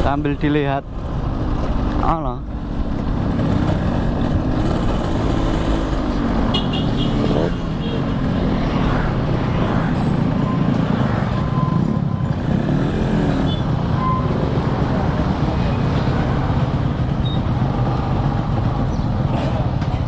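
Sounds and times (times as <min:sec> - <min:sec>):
road and traffic noise: 0:00.0 - 0:20.0
motorcycle engine running: 0:14.5 - 0:20.0.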